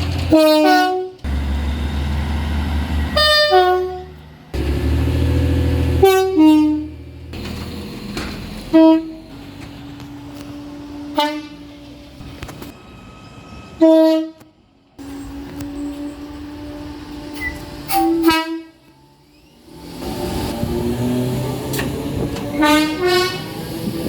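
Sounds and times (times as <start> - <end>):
train horn toots: 0.3 - 1.3, 3.1 - 4.2, 5.8 - 7.1, 8.6 - 9.3, 10.4 - 11.8, 13.8 - 18.9, 22.5 - 23.9.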